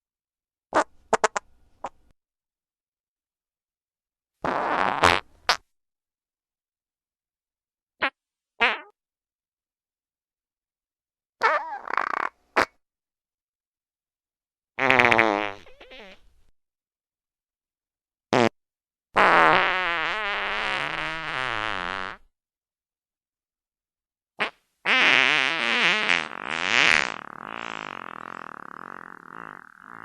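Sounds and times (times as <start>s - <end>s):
fart sound effects: 4.4s - 5.6s, 11.4s - 12.8s, 14.8s - 16.2s, 18.3s - 18.6s, 19.2s - 22.3s, 24.4s - 30.0s.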